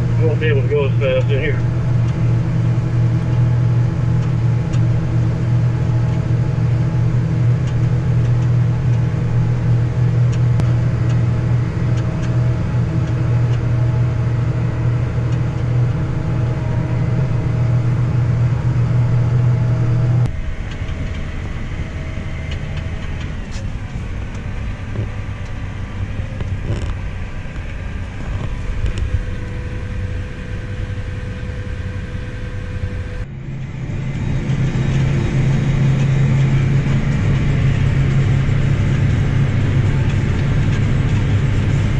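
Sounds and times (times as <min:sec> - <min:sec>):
farm machine engine drone: 0:00.0 - 0:41.9.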